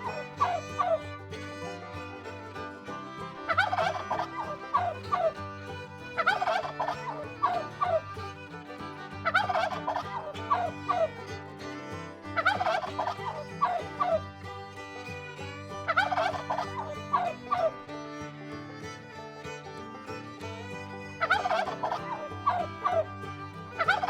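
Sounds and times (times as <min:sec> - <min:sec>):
turkey gobbling: 0:00.0 - 0:01.0, 0:03.5 - 0:05.4, 0:06.1 - 0:08.0, 0:09.2 - 0:11.1, 0:12.4 - 0:14.2, 0:15.9 - 0:17.7, 0:21.2 - 0:23.0, 0:23.8 - 0:24.0.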